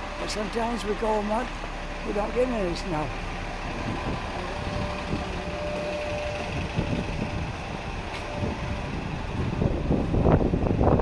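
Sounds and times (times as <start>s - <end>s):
motor vehicle whine: 0.0s - 11.0s
street noise: 0.0s - 11.0s
wind rush: 3.7s - 11.0s.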